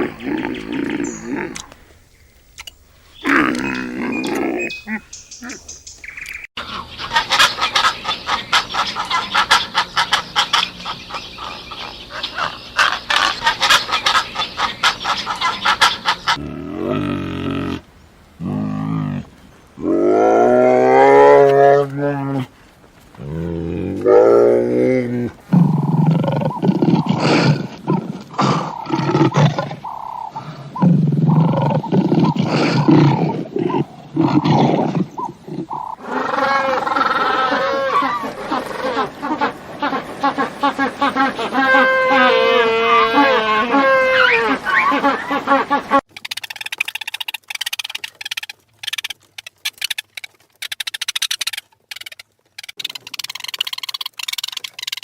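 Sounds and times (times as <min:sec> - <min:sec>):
poultry clucking: 0:03.3 - 0:16.5, 0:35.1 - 0:46.0
animal roaring: 0:16.4 - 0:22.5, 0:23.2 - 0:39.1.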